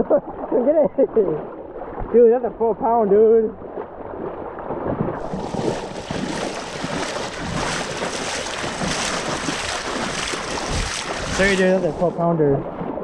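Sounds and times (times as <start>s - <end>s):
wind: 0.0s - 13.0s
river water rushing: 5.2s - 12.3s.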